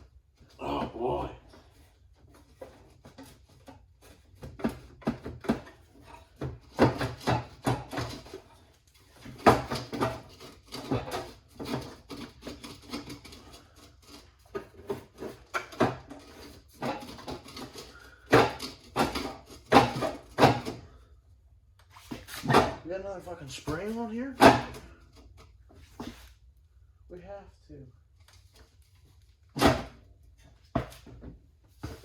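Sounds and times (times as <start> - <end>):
metal tools clanking and rattling: 9.2 - 20.8.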